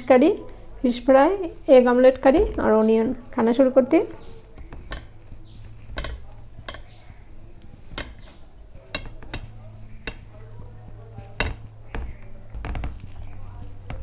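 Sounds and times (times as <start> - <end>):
dishes clinking: 4.0 - 14.0.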